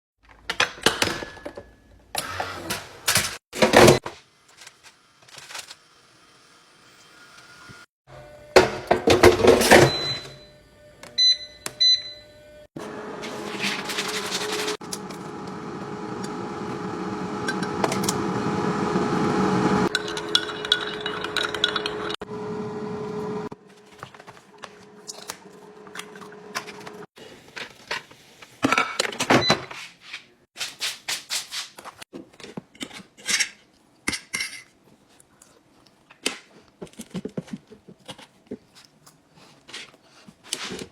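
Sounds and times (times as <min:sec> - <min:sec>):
air fryer fan humming: 0:12.8 - 0:23.5
plates and cutlery clinking: 0:19.9 - 0:22.2.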